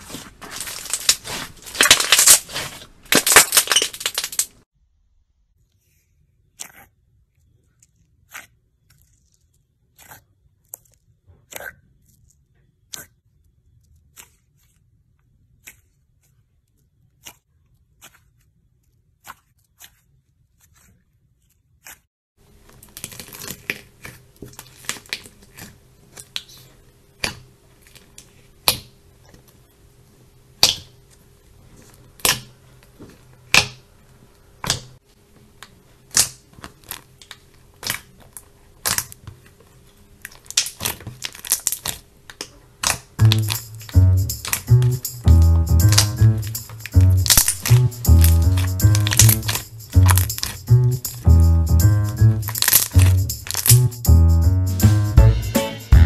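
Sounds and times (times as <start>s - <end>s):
slime squeezed sticky pops: 42.8s - 50.6s, 52.4s - 53.7s.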